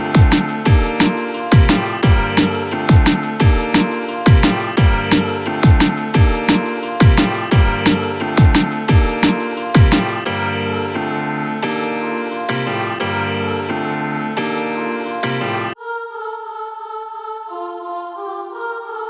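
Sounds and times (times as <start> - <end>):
choir-like chords: 0.0 - 19.0
bass line: 1.6 - 3.6, 4.4 - 6.2.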